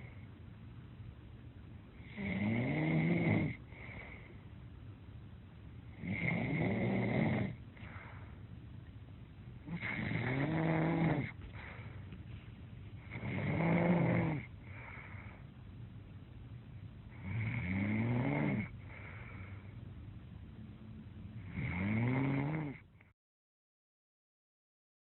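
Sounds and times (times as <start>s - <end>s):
quiet breathing: 0.0s - 0.6s, 3.4s - 21.9s.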